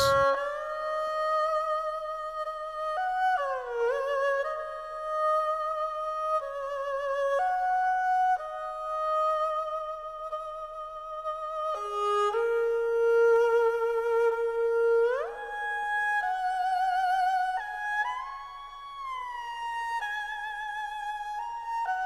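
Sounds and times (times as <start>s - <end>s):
bowed string with vibrato: 0.0s - 0.6s.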